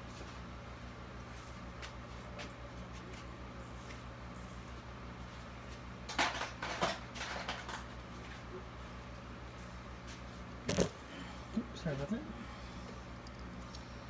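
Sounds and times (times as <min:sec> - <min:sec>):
low electrical hum: 0:00.0 - 0:14.0
plastic parts clicking and rattling: 0:10.7 - 0:10.9.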